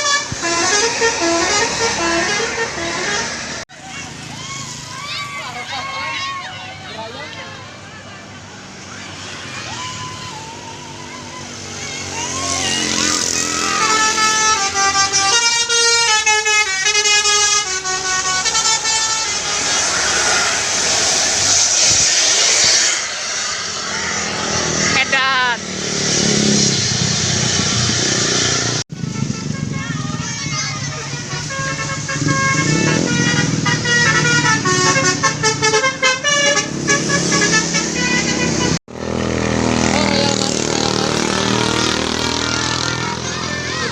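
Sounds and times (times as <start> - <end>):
bus horn playing a melody: 0.0 - 3.6, 12.5 - 21.1, 29.0 - 43.9.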